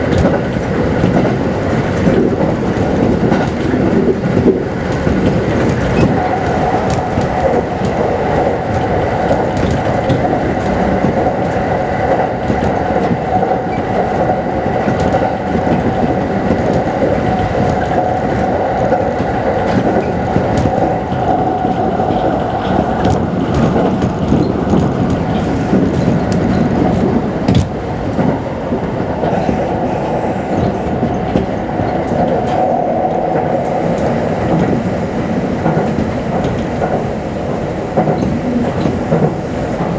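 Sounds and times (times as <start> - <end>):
train wheels rumbling on rail: 0.0 - 39.9
train motor whine: 33.6 - 39.9.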